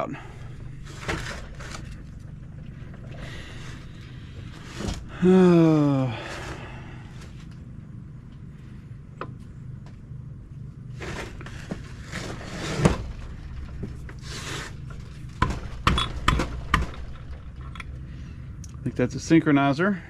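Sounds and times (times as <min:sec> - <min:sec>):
steady low hum: 0:00.0 - 0:20.0
sharp metal knocks: 0:15.4 - 0:17.2.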